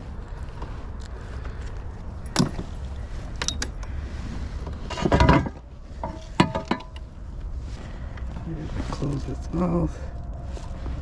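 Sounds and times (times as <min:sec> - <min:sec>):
steady low rumble: 0:05.6 - 0:11.0.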